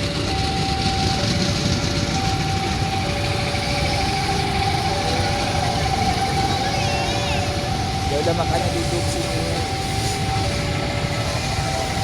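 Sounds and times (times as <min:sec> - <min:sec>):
steady rumble of traffic: 0:00.0 - 0:12.0
two-tone crossing alarm: 0:00.0 - 0:12.0.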